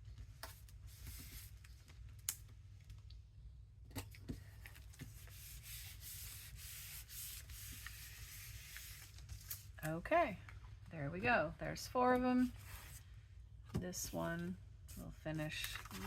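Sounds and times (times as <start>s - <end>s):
hands rubbing paper: 4.9s - 9.7s.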